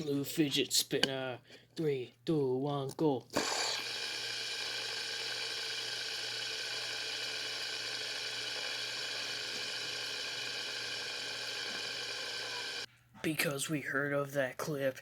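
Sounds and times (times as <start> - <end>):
fidget spinner whirring: 3.4 - 12.9.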